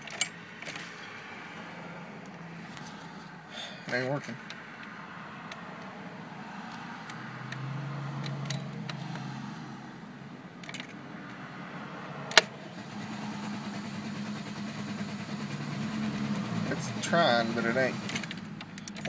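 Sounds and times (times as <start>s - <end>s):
starter motor drone: 5.5s - 10.0s, 12.1s - 19.0s.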